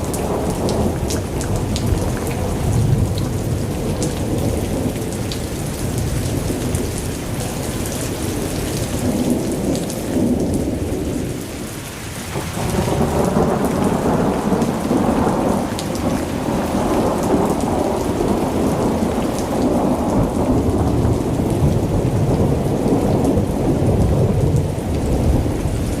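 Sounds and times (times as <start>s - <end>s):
rolling thunder: 0.0s - 11.7s, 12.3s - 26.0s
heavy rain: 0.0s - 26.0s.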